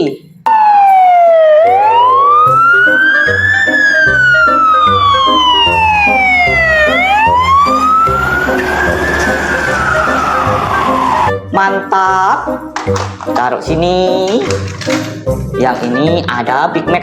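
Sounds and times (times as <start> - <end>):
background music with steady beat: 0.0 - 17.0
wailing siren: 0.5 - 11.4.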